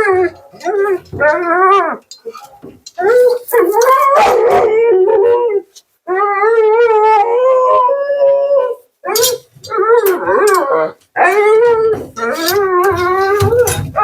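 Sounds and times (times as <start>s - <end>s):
dog howling: 3.0s - 14.0s.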